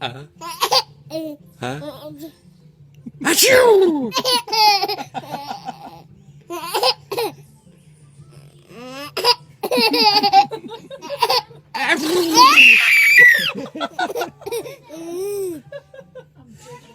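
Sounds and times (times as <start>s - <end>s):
baby giggling: 8.9s - 15.6s.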